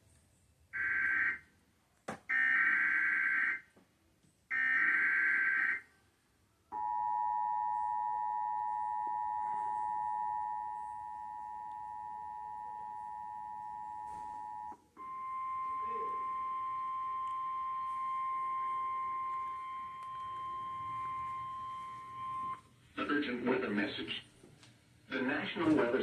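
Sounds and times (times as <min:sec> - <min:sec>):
two-tone attention signal: 0:06.8 - 0:22.6
data tone bursts: 0:08.6 - 0:22.6.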